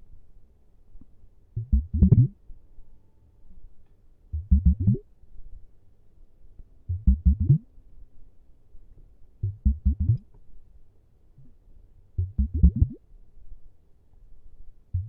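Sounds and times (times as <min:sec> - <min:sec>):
low muffled strokes: 0:01.6 - 0:02.4, 0:04.4 - 0:05.0.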